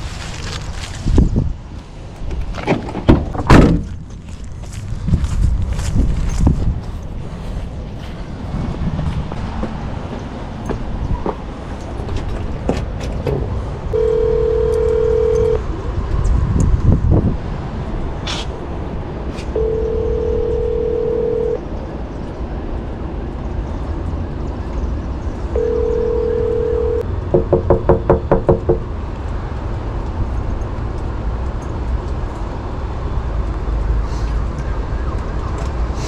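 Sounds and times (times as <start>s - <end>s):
low outdoor rumble: 0.0s - 36.0s
intercom beeps: 14.0s - 15.6s, 19.6s - 21.6s, 25.6s - 27.0s.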